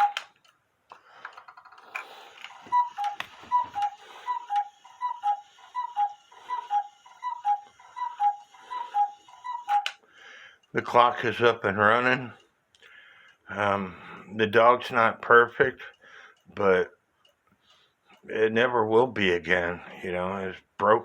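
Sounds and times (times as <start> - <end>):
cuckoo clock calling: 0.0 - 12.5
clock ticking: 0.0 - 21.0.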